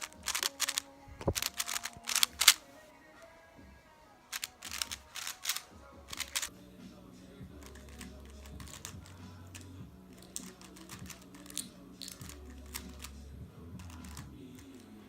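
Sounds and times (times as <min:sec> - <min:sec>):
plastic puzzle cube clicking: 0:00.0 - 0:02.6, 0:04.3 - 0:06.5, 0:07.6 - 0:08.9, 0:09.6 - 0:13.1, 0:13.8 - 0:14.8
background music with bass line: 0:05.8 - 0:15.0.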